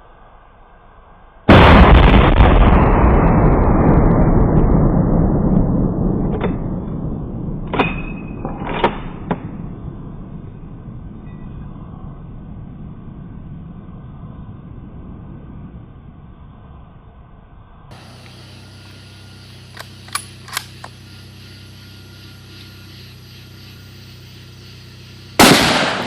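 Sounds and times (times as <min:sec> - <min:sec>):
loud explosion boom: 0:01.5 - 0:16.4, 0:25.4 - 0:26.0
sharp cracks: 0:19.6 - 0:21.0, 0:25.4 - 0:26.0
rifle shot: 0:25.4 - 0:26.0.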